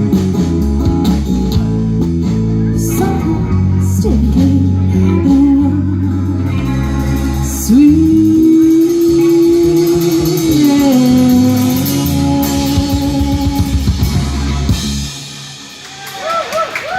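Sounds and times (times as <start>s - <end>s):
live rock band with singing: 0.0s - 16.2s.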